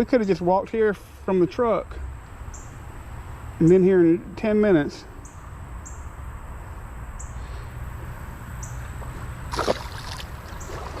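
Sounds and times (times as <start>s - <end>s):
creek water noise: 7.4s - 11.0s.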